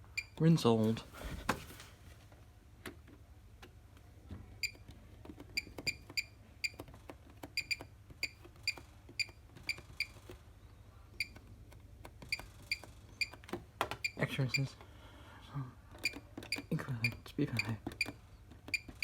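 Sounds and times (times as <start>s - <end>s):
washing machine panel beeps: 0.0s - 0.4s, 4.6s - 4.8s, 5.6s - 6.8s, 7.6s - 10.1s, 14.0s - 14.7s, 16.0s - 19.0s.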